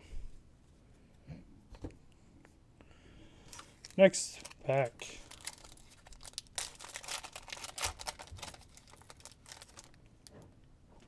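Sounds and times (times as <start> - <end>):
foil wrapper crinkling and tearing: 3.5 - 10.0.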